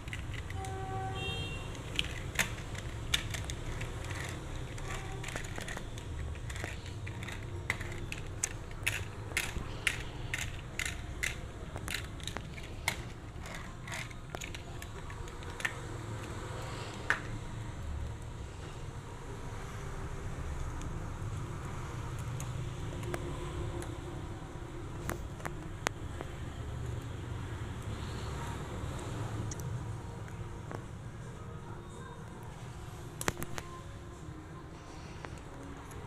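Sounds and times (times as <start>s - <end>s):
plastic toy parts clicking: 0.0s - 0.8s, 1.7s - 16.4s, 33.2s - 33.6s.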